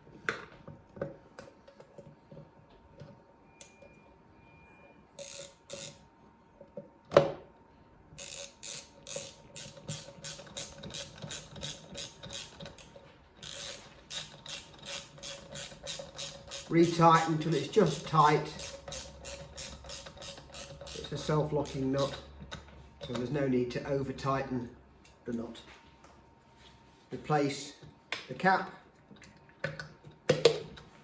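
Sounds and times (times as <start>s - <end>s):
ratchet wrench clicking: 5.2s - 6.0s, 8.2s - 22.3s.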